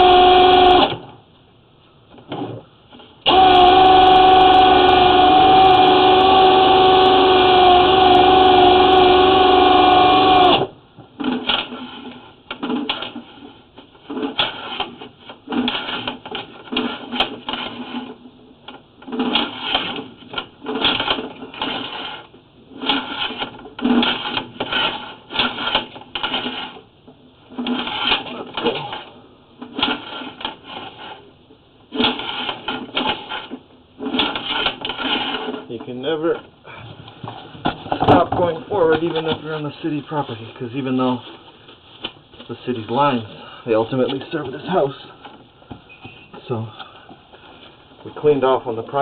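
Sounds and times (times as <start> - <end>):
drain cleaning machine motor whining: 3.3 - 10.7.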